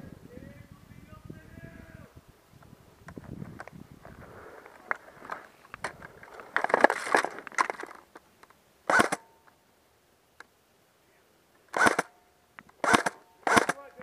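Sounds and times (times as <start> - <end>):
airsoft gun shot: 8.9 - 9.2, 11.8 - 12.1, 12.8 - 13.8.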